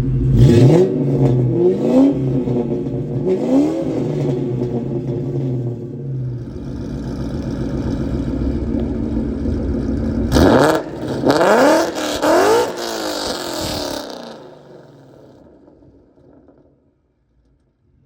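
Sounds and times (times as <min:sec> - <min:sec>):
car engine idling and revving: 0:00.0 - 0:16.7.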